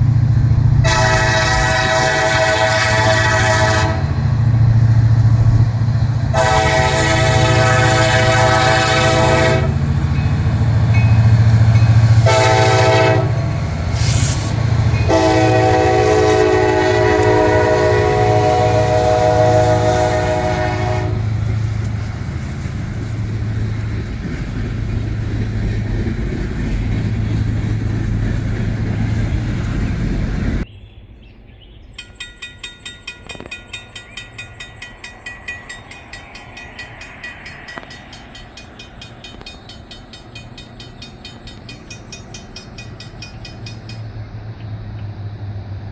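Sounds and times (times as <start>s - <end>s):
locomotive engine rumbling: 0.0s - 30.7s, 32.0s - 45.6s
locomotive air horn blasts: 0.8s - 4.1s, 6.3s - 9.8s, 12.2s - 21.4s
rapid even ticking: 32.0s - 44.0s.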